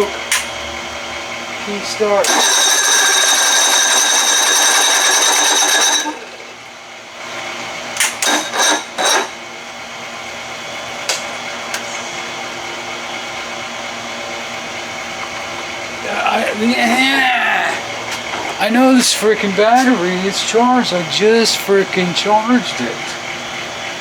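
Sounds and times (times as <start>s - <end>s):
starter motor whining: 1.4s - 9.4s.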